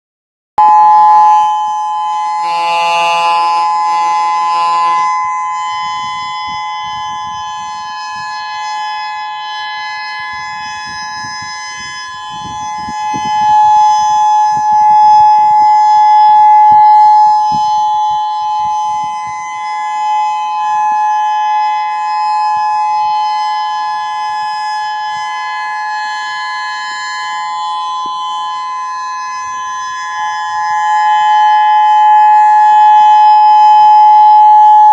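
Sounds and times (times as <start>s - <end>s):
low buzzy tone: 0.6s - 20.8s
warning siren steady tone: 0.6s - 34.9s.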